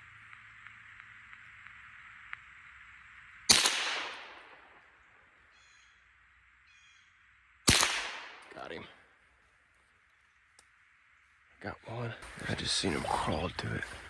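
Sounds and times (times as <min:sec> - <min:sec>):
rifle shot with echo: 0:03.5 - 0:05.0, 0:07.7 - 0:08.9.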